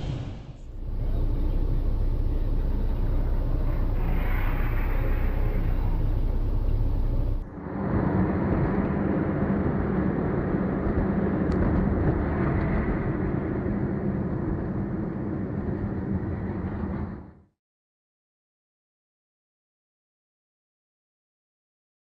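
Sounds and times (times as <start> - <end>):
car road and engine noise: 0.7 - 7.4.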